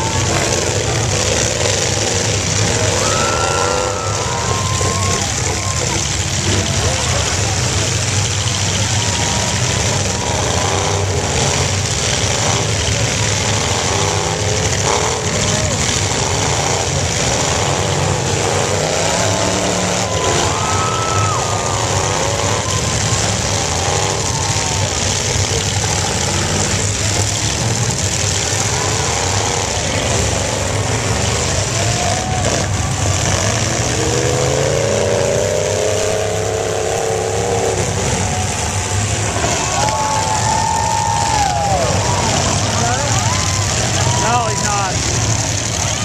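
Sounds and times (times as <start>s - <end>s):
car engines revving: 0.0s - 46.0s.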